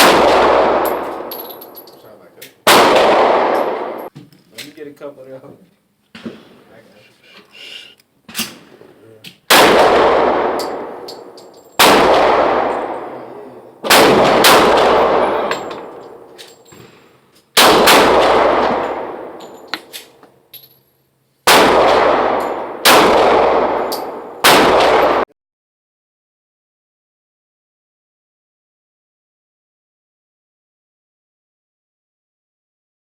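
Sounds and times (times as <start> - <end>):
pistol shots with reverberation: 0.0 - 1.9, 2.6 - 4.1, 9.5 - 16.3, 17.6 - 20.2, 21.4 - 25.2.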